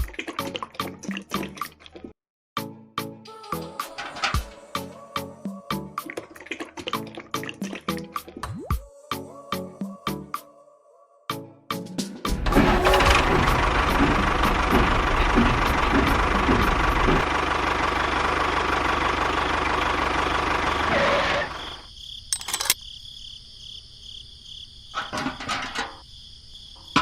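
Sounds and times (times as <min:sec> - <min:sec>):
small engine running: 0:12.4 - 0:21.8
clicks and knocks: 0:22.4 - 0:22.8.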